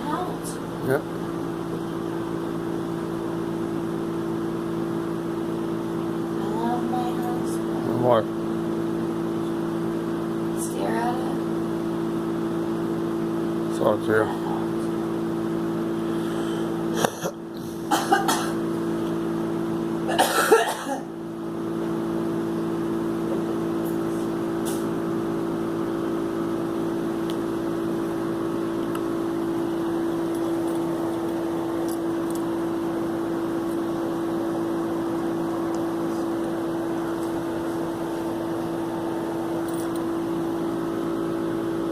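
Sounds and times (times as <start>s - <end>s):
steady low hum: 0.0s - 41.9s
girl coughing: 16.9s - 18.6s, 20.1s - 21.2s.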